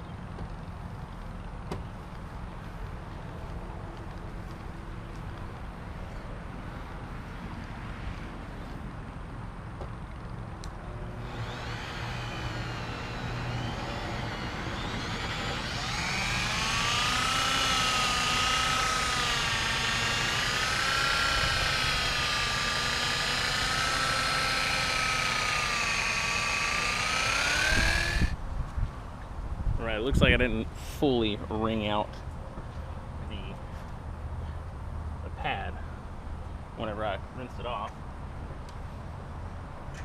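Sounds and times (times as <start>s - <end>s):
orbital polisher motor whine: 11.1s - 28.4s.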